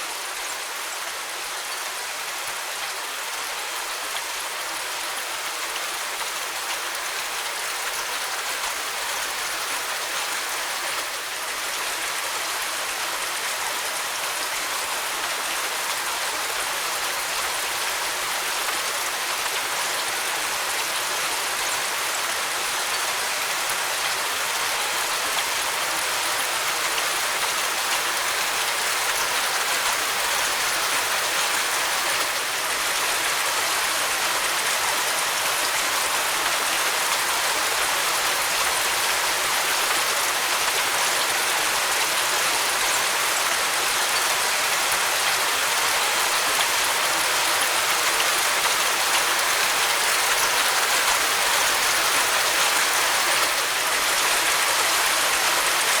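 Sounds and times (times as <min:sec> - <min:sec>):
steady rain falling: 0:00.0 - 0:56.0.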